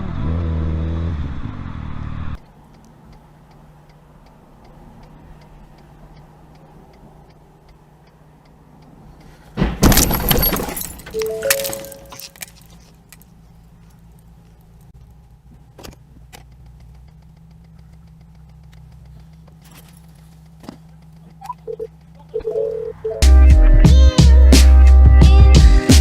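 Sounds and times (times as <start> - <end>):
low vehicle hum: 0.0 - 26.0
sharp clicks: 2.4 - 9.3
loud rattling crash: 9.6 - 11.2
short tone beeps: 11.2 - 12.2, 21.4 - 23.3.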